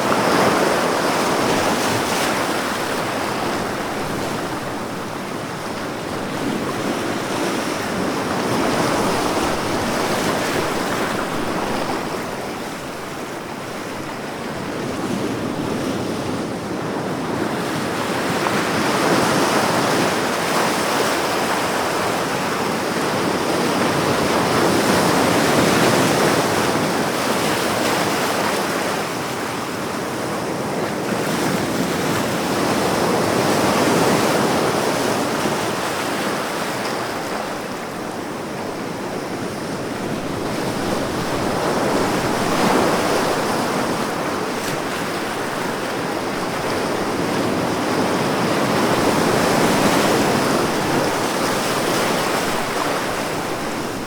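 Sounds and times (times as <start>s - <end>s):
ocean waves breaking: 0.0s - 54.0s.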